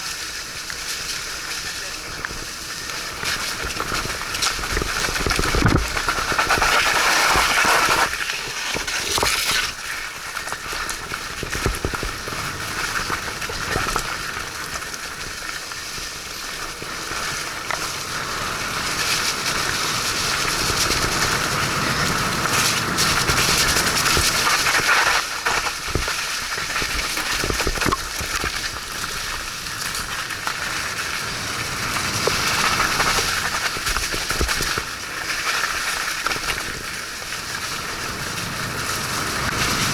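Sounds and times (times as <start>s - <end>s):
bike tyre and trail noise: 0.0s - 39.9s
tyres crackling through mud: 0.2s - 15.7s.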